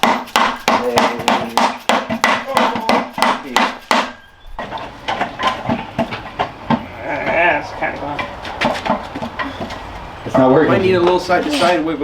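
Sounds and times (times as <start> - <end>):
rapid hammer blows: 0.0 - 4.2.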